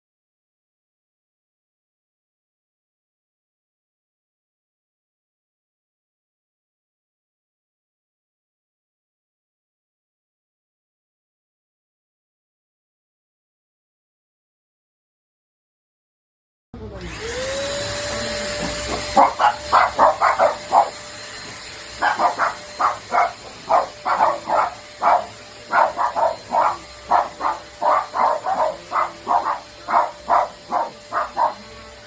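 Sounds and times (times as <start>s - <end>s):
mini vacuum cleaner motor whine: 16.8s - 32.0s
dog barking: 18.9s - 21.0s, 22.0s - 31.7s.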